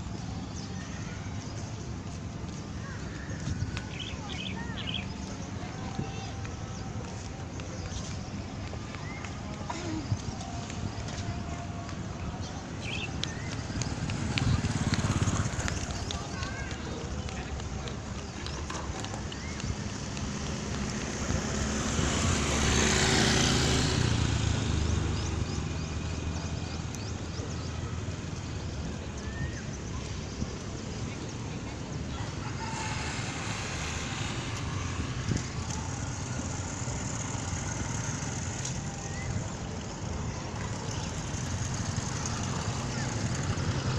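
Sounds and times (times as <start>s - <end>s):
wind on microphone: 28.1s - 37.8s.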